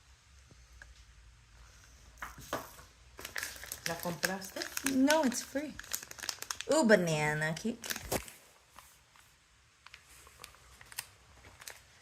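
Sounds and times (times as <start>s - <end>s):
plastic snack packaging crinkling: 2.6s - 12.0s.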